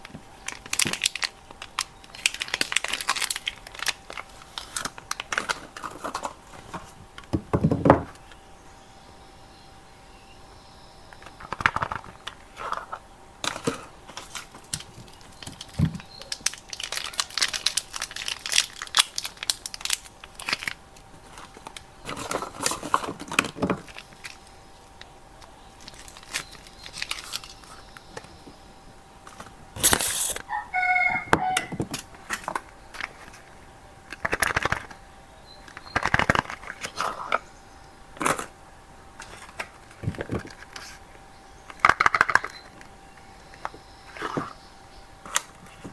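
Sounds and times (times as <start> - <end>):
packaging crinkling and tearing: 0.0 - 7.3, 11.2 - 28.6, 29.2 - 30.4, 31.5 - 35.0, 35.7 - 37.4, 39.2 - 41.1.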